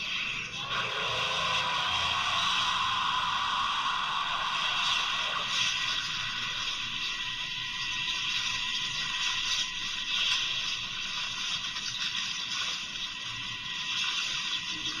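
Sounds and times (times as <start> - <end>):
toy speaker hissing sound effect: 0.0 - 7.2.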